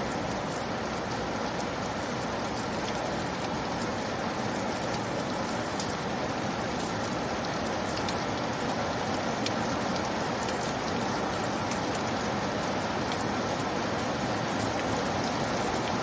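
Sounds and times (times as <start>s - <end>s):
steady rain hiss: 0.0s - 16.0s.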